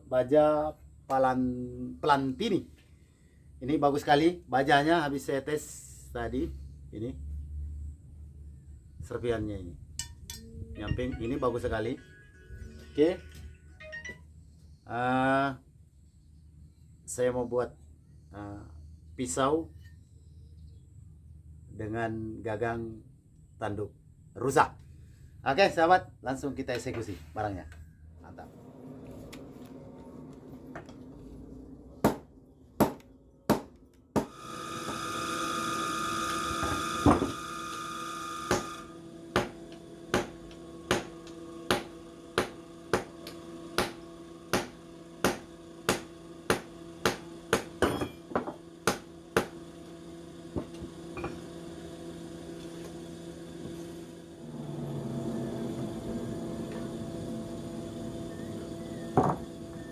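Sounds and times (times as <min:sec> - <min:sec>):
machine hum: 0:06.5 - 0:59.9
loud machine whine: 0:34.2 - 0:59.9.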